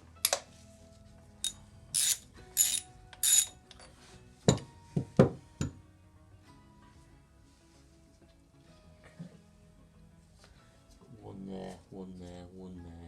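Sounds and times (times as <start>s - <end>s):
socket ratchet clicking: 1.4s - 3.6s.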